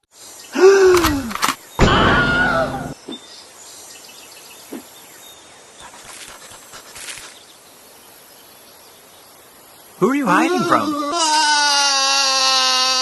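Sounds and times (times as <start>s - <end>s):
faint outdoor background: 0.0s - 13.0s
high-pitched animal-like cry: 10.3s - 13.0s.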